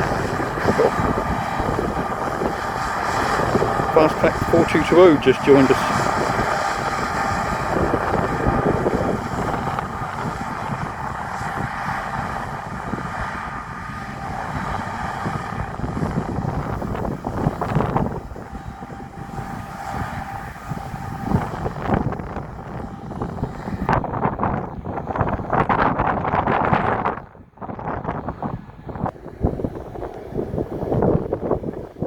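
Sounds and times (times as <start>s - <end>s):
harvest machinery running: 0.0s - 25.6s
wind buffeting microphone: 0.0s - 32.0s.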